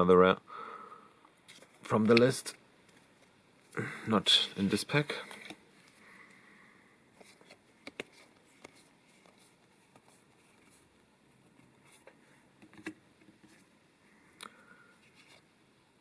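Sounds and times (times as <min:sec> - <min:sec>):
trading cards flipped through: 0:05.1 - 0:06.0, 0:07.2 - 0:13.7.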